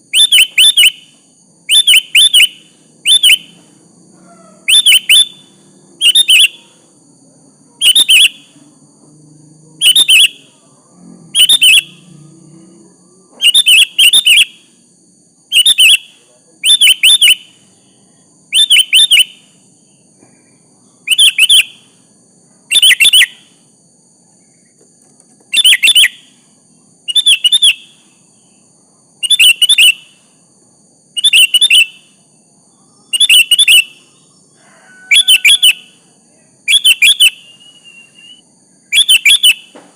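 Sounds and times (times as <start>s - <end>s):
bulbul chirping: 0.0s - 3.6s, 4.6s - 6.8s, 7.8s - 8.6s, 9.8s - 10.5s, 11.4s - 12.0s, 13.4s - 14.7s, 15.5s - 17.6s, 18.5s - 19.5s, 21.0s - 21.9s, 22.7s - 23.5s, 25.5s - 26.3s, 27.1s - 28.0s, 29.2s - 30.2s, 31.2s - 32.2s, 33.1s - 34.1s, 36.7s - 39.8s.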